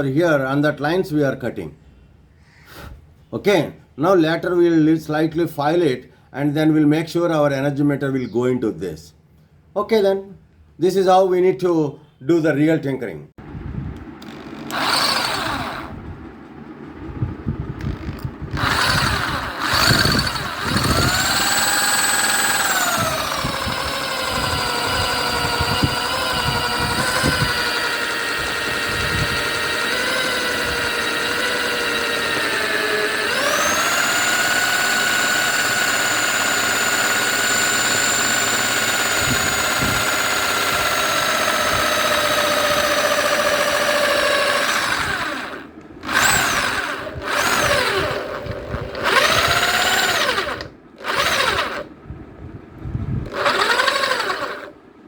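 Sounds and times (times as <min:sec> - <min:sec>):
electric drill motor whine: 0:14.2 - 0:16.2, 0:17.7 - 0:51.9, 0:53.2 - 0:54.7.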